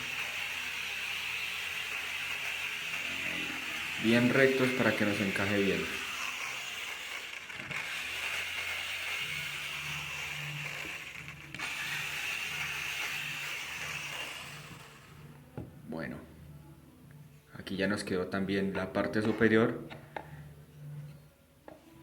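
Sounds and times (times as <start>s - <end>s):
jigsaw cutting wood: 0.0s - 15.2s.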